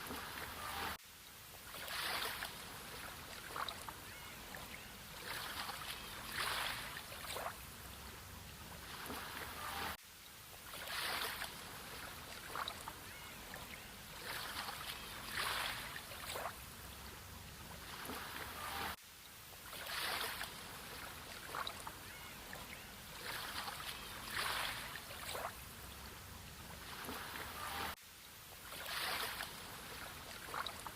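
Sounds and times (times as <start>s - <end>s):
sea waves washing in: 1.6s - 3.6s, 10.6s - 12.8s, 23.1s - 30.9s.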